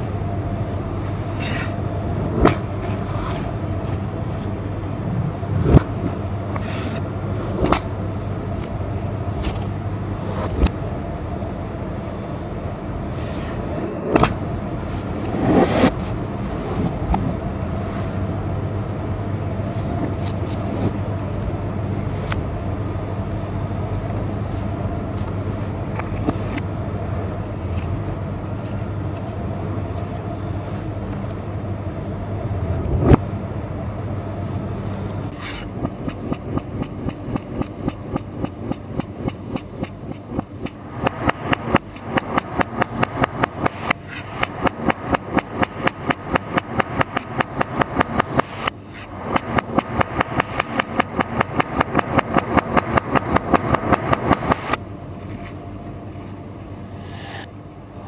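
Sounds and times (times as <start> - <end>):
low hum: 0.0 - 58.0.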